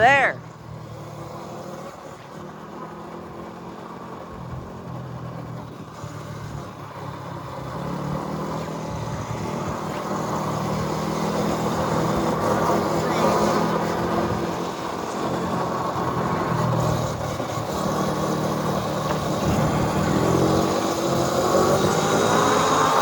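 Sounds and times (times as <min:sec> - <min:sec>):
road noise: 0:00.0 - 0:23.0
vehicle engine humming: 0:00.0 - 0:23.0
wind: 0:00.0 - 0:23.0.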